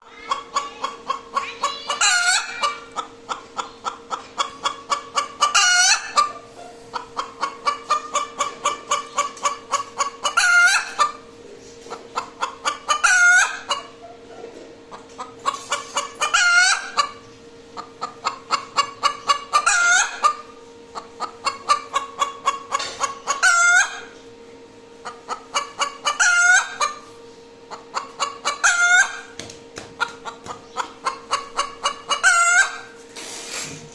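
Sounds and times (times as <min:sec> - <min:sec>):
hen clucking and squawking: 0:00.0 - 0:11.3, 0:11.9 - 0:17.2, 0:17.8 - 0:24.2, 0:25.0 - 0:33.0.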